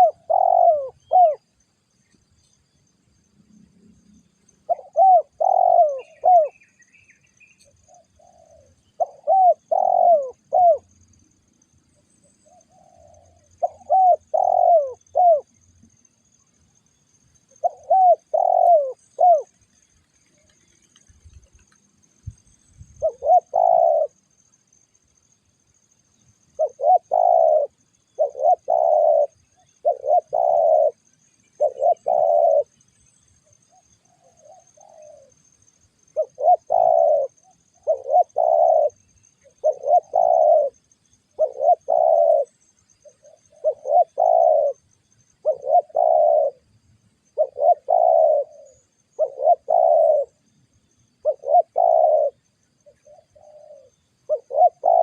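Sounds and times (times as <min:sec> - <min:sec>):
dove cooing: 0:00.0 - 0:01.5, 0:04.6 - 0:06.9, 0:07.6 - 0:11.0, 0:12.4 - 0:15.6, 0:17.5 - 0:21.8, 0:23.0 - 0:24.2, 0:26.6 - 0:32.8, 0:33.7 - 0:35.4, 0:36.1 - 0:46.7, 0:47.3 - 0:50.4, 0:51.2 - 0:55.0
faint softer bird call: 0:00.0 - 0:02.6, 0:03.5 - 0:10.9, 0:12.0 - 0:16.0, 0:17.6 - 0:19.6, 0:20.2 - 0:24.2, 0:26.6 - 0:35.3, 0:36.1 - 0:44.8, 0:51.2 - 0:55.0.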